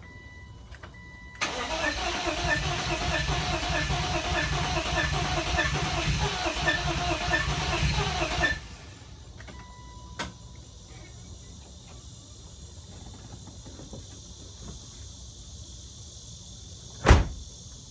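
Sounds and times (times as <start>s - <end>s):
engine cranking by starter motor: 1.4s - 9.2s.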